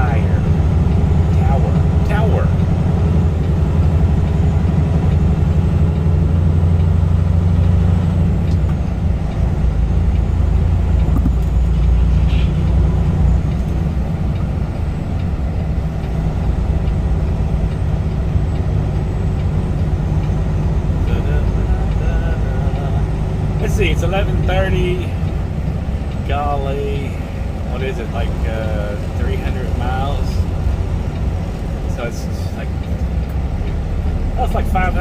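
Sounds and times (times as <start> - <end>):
road noise: 0.0 - 35.0
truck diesel engine drone: 0.0 - 35.0.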